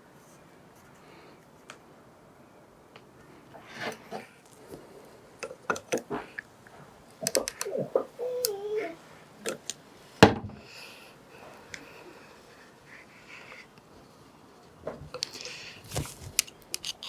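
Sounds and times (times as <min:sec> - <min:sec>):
metal parts clicking and knocking: 0:16.3 - 0:17.0.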